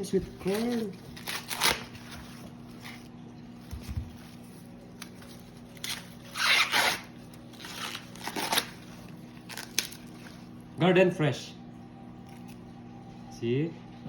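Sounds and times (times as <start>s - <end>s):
corn husks tearing: 0.0s - 3.1s, 4.9s - 10.4s.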